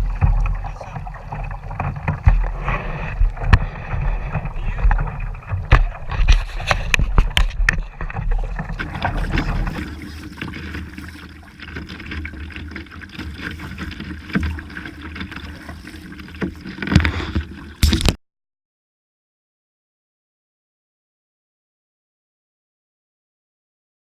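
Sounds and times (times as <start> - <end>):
knocks against hull: 0.0 - 11.1, 13.2 - 18.2
water noise: 0.0 - 18.2.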